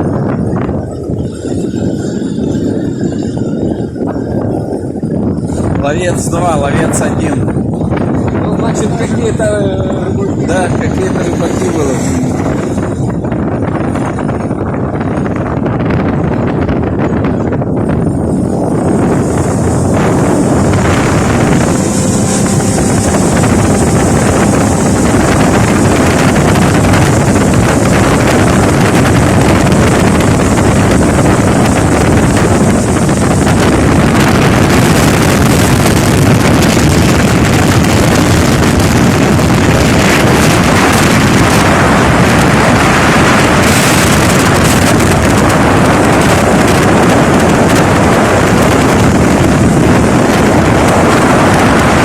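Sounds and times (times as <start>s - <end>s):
motorboat engine: 0.0s - 52.0s
wind buffeting microphone: 0.0s - 52.0s
rushing water: 17.9s - 52.0s.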